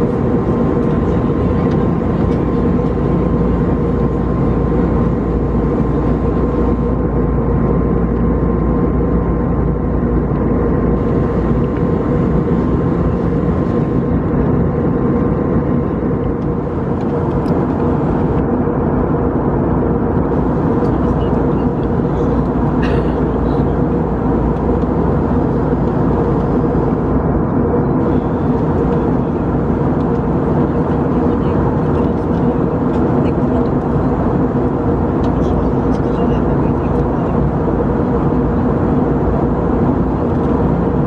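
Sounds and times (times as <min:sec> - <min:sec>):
engine and airflow drone: 0:00.0 - 0:41.0
faint steady whine: 0:10.8 - 0:18.4.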